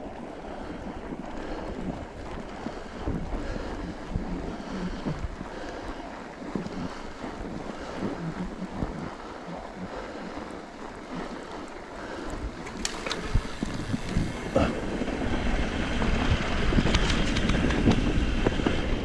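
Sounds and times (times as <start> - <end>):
wind on microphone: 0.0 - 19.0
bike tyres crunching through snow: 10.1 - 19.0.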